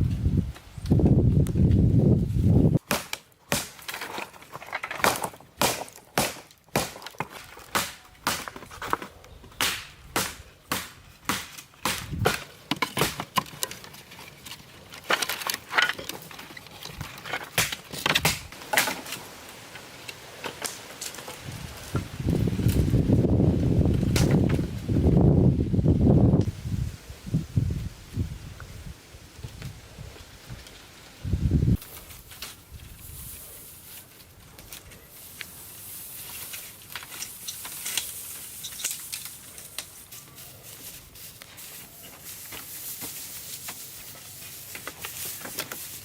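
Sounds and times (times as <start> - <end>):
hand tool chopping blows: 5.0 - 8.6, 9.6 - 13.4.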